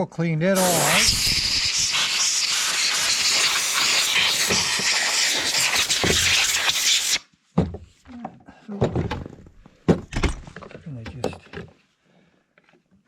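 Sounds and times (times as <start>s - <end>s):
pressurised spray hissing: 0.6s - 7.2s.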